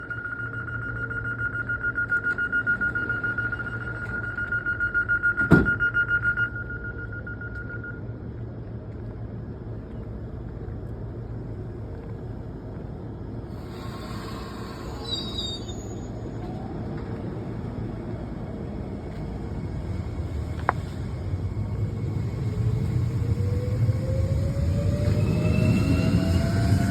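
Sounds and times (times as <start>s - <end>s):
train door warning beeps: 0.0s - 8.2s
train doors knocking shut: 5.4s - 5.8s
electric train running hum: 6.6s - 26.9s
high squeal: 13.6s - 16.5s.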